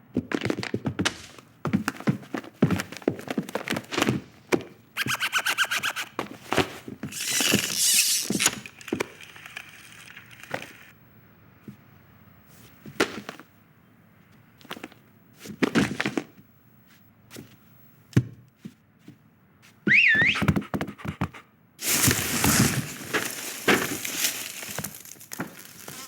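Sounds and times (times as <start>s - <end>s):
fast rattle: 7.1s - 10.9s.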